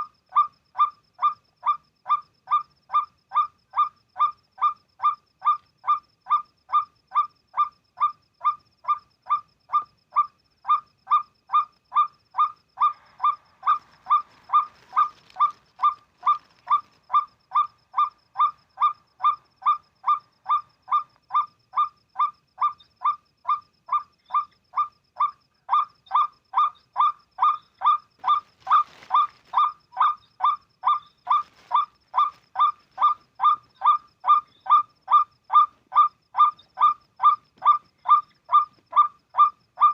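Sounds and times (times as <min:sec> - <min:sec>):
waterhen hoarse honking call: 0:11.1 - 0:39.9.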